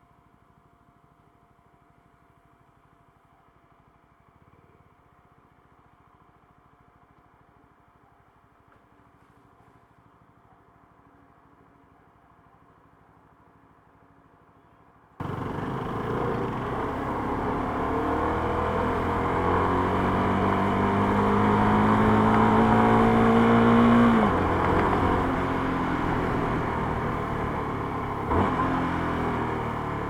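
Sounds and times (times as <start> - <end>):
motorcycle engine revving: 15.2 - 30.0.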